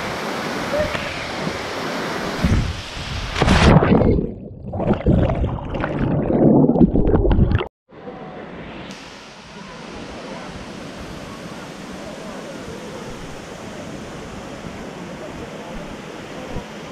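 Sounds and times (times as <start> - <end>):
waterfall rushing: 0.0 - 3.0, 8.9 - 16.9
muffled gurgling and splashing: 3.3 - 7.7.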